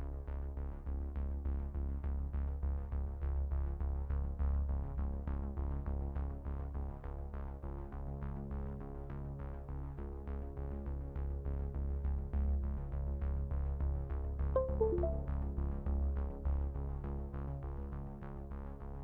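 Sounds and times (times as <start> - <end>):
electronic synthesizer music: 14.6 - 15.3.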